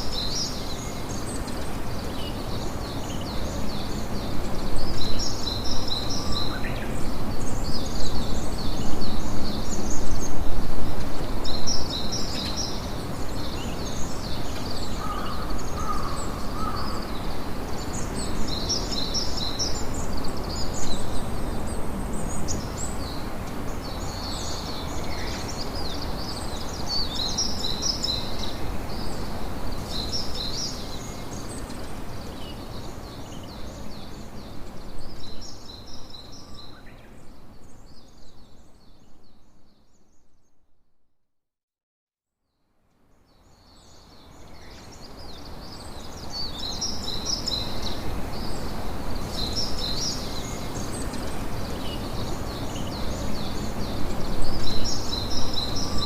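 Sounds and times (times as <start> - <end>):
small birds chirping: 43.2 - 56.0.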